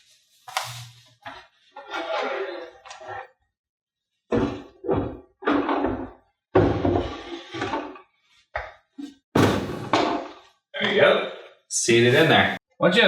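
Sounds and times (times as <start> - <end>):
hollow plastic thunks and knocks: 9.4 - 10.3.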